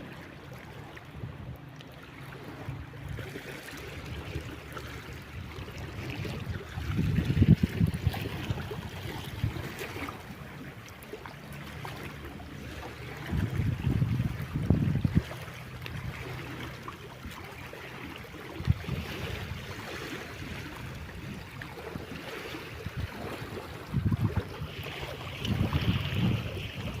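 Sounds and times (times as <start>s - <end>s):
river water lapping: 0.0s - 27.0s
wind buffeting microphone: 3.9s - 10.4s, 13.0s - 16.4s, 18.4s - 27.0s.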